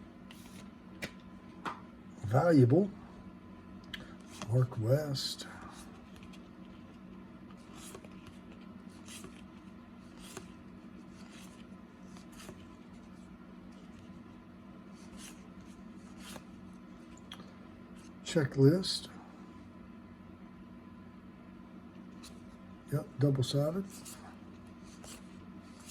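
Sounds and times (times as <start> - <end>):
steady low hum: 0.0 - 25.9
trading cards swishing: 0.3 - 1.2, 7.5 - 13.2, 14.9 - 17.2, 23.8 - 25.9.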